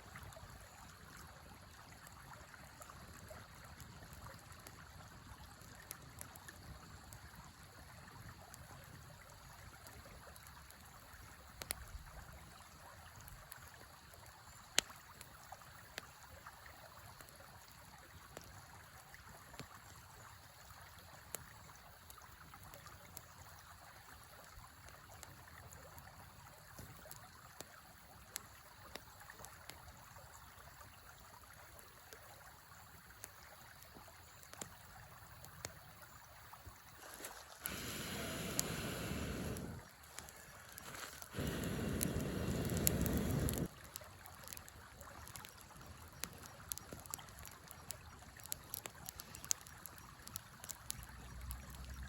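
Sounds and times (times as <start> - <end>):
campfire crackling: 0.1 - 52.0
river flowing: 36.9 - 46.8.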